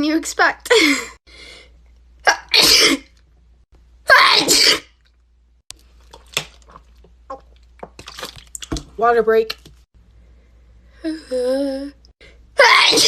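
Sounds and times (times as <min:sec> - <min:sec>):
person sneezing: 0:02.3 - 0:03.1, 0:04.1 - 0:04.9.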